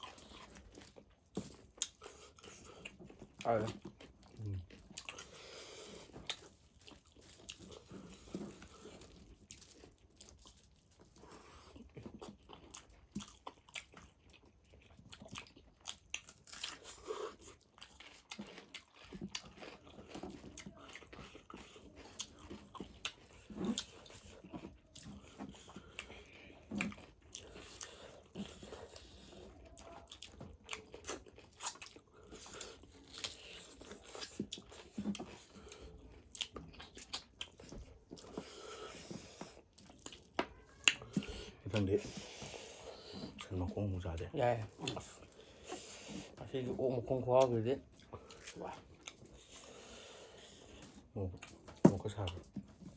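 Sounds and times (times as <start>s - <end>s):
person chewing close-up: 0.0s - 52.9s.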